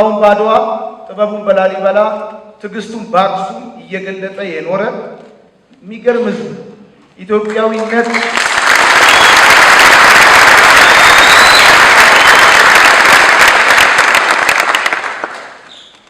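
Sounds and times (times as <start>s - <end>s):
audience applauding: 7.4s - 16.0s.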